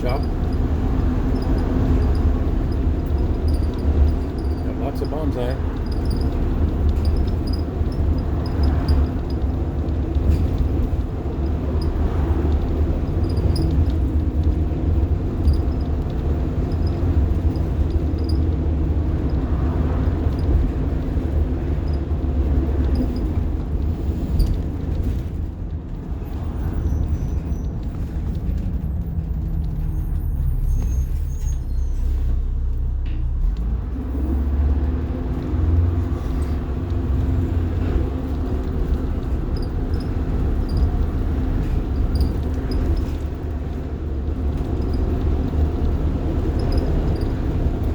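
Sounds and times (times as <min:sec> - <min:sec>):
bus diesel engine rumbling: 0:00.0 - 0:47.9.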